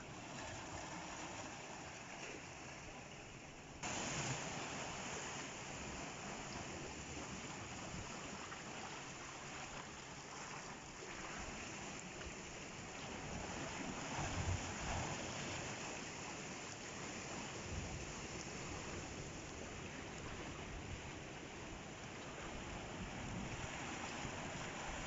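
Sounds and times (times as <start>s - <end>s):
sea waves washing in: 0.0s - 25.0s.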